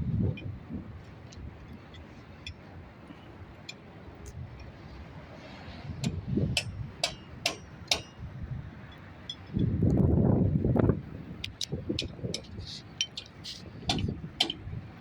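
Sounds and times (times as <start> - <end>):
hand tools clinking on metal: 12.0 - 14.7.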